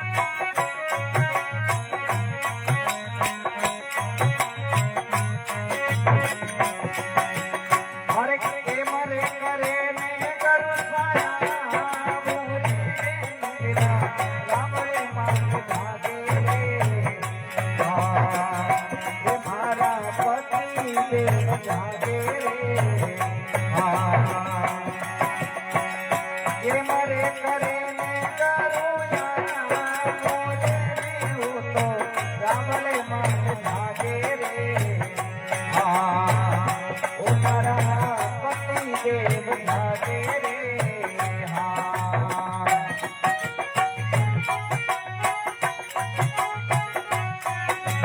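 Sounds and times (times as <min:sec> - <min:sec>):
jingling rattle percussion: 0:00.0 - 0:48.0.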